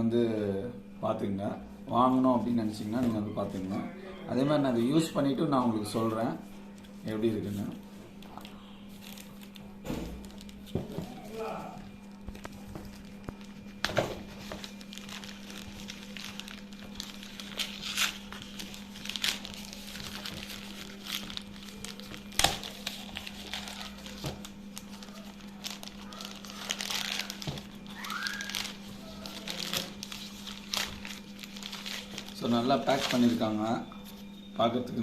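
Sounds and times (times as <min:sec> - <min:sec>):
packaging crinkling and rustling: 0:06.8 - 0:34.3.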